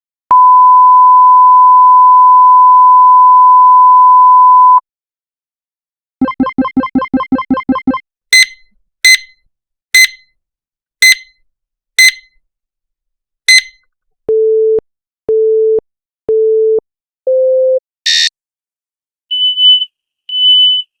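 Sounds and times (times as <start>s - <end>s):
high beeps: 6.2s - 9.2s
sharp short electronic beeps: 6.2s - 9.3s, 10.0s - 10.2s, 11.0s - 11.3s, 12.0s - 12.2s.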